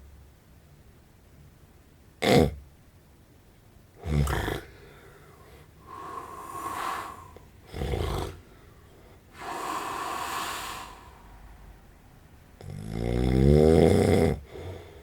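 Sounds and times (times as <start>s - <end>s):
man snoring: 4.0s - 4.7s, 5.9s - 8.4s, 9.4s - 11.2s, 12.6s - 14.5s.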